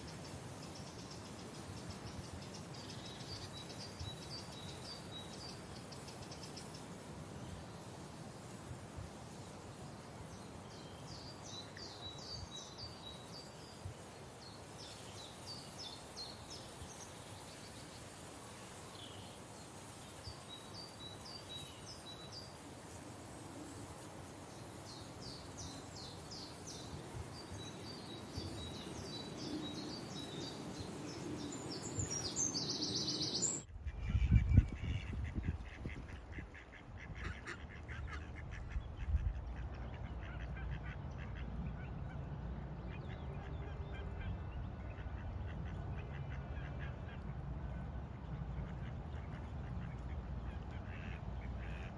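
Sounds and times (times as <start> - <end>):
duck quacking: 33.8 - 41.5.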